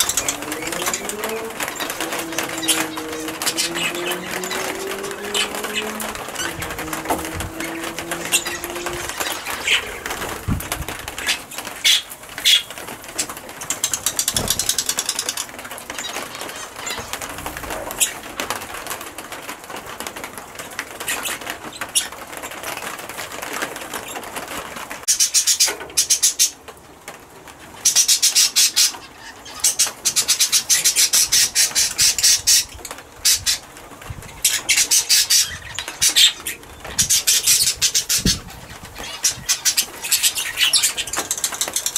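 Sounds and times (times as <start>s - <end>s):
rapid wing flapping: 0.0s - 25.0s
parrots clicking and tapping: 0.0s - 41.9s.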